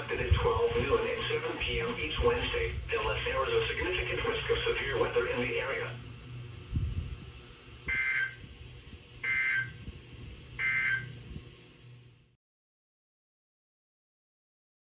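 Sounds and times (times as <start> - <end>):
warbling digital data tones: 7.9 - 8.4.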